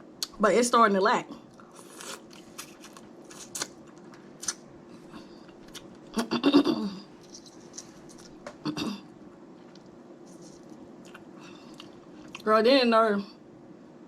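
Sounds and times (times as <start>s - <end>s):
crab shells cracking: 1.6s - 4.6s.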